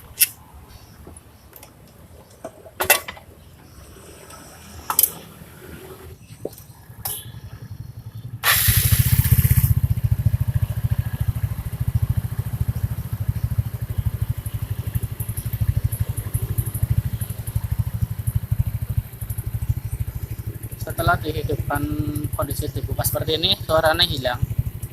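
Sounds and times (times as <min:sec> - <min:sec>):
scooter engine starting and idling: 0:02.8 - 0:24.9.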